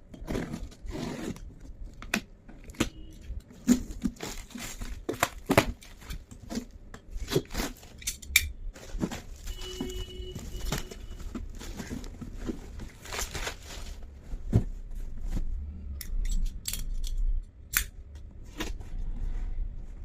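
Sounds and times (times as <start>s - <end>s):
packaging tearing and crinkling: 0.3s - 8.0s, 8.8s - 14.1s.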